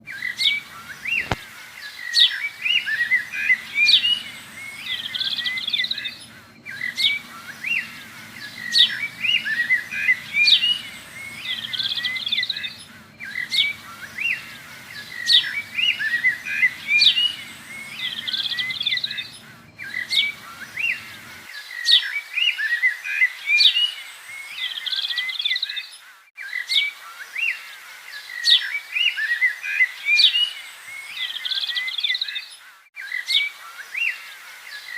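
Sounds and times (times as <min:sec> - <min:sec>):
small birds chirping: 0:00.0 - 0:22.2
low hum: 0:02.6 - 0:21.4.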